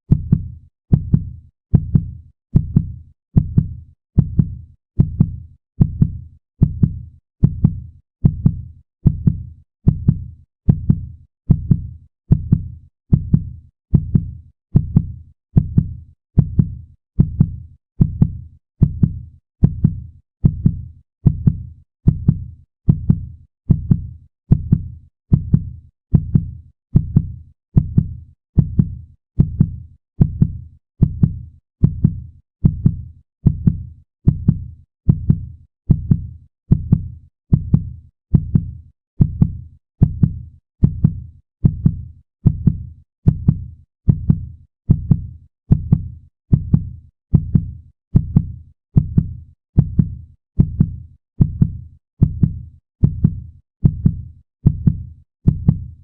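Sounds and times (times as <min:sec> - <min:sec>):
heartbeat thuds: 0:00.1 - 0:55.9.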